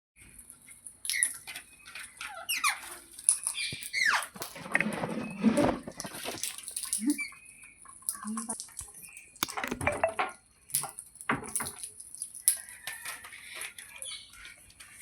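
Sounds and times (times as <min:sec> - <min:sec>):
parrot chirping and screeching: 0:01.0 - 0:05.7, 0:06.9 - 0:09.3, 0:12.6 - 0:14.6.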